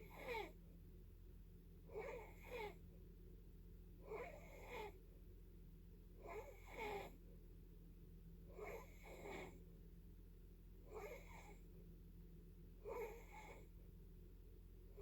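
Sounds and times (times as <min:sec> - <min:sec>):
faint snoring: 0:00.0 - 0:00.6, 0:01.9 - 0:02.8, 0:04.0 - 0:05.0, 0:06.2 - 0:07.2, 0:08.5 - 0:09.6, 0:10.9 - 0:11.6, 0:12.8 - 0:13.7.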